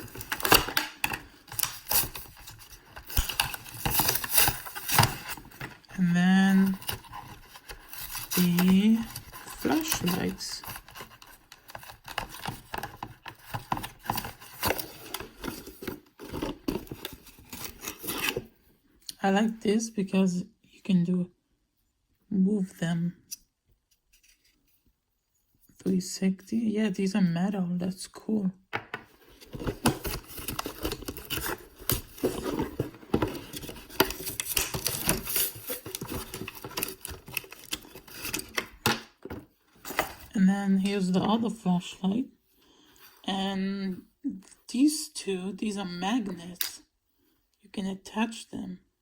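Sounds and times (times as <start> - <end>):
packaging rubbing and scraping: 0.0 - 18.5, 29.2 - 38.8.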